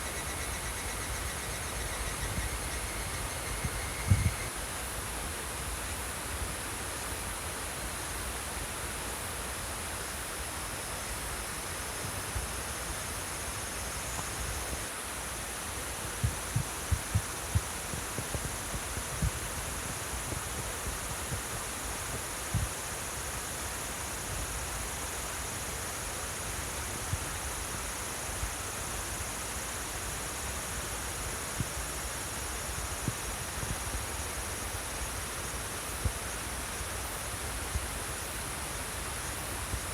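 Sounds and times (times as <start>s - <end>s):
insects trilling: 0.0s - 4.5s.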